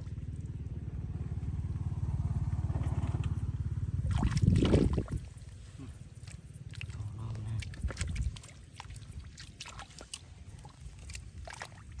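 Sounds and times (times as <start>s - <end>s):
low rumble: 0.0s - 9.4s
splashes of shallow water: 4.0s - 12.0s.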